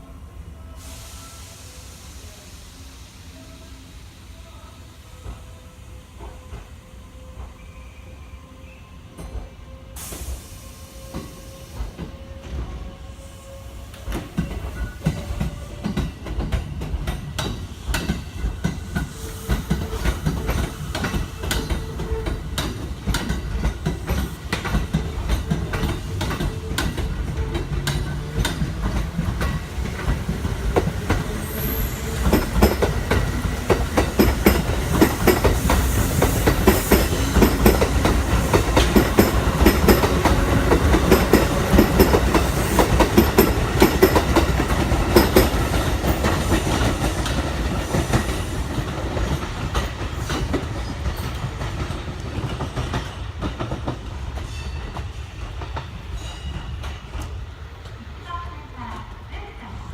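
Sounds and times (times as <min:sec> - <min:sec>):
low train rumble: 0:00.0 - 0:59.9
train wheels clacking over rail joints: 0:14.1 - 0:57.4.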